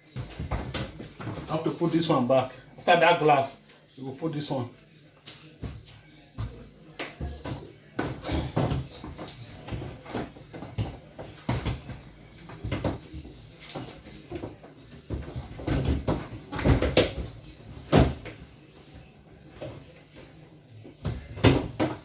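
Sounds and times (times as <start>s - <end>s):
fridge shelves knocking and scraping: 0.0s - 2.4s, 7.2s - 18.5s, 20.8s - 22.0s.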